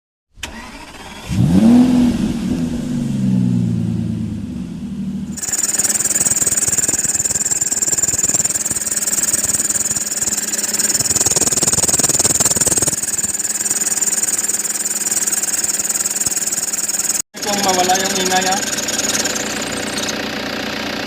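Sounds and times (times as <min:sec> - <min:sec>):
car engine running: 0:02.7 - 0:21.0
high-pitched belt squeal: 0:05.4 - 0:20.2.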